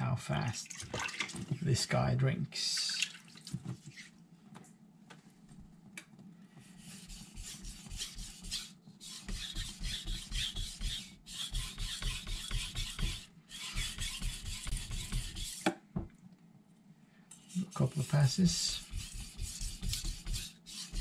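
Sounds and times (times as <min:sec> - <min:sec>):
knife scraping on whetstone: 0:06.9 - 0:15.6, 0:17.5 - 0:21.0.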